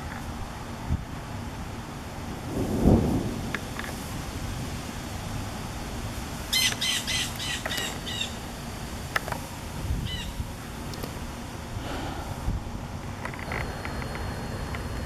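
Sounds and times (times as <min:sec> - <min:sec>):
blue jay harsh calls: 0:06.5 - 0:08.6, 0:10.0 - 0:10.4.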